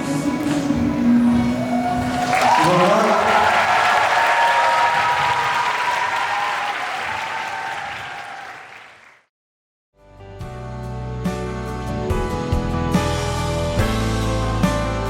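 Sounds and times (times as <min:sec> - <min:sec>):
audience applauding and cheering: 0:01.3 - 0:09.3.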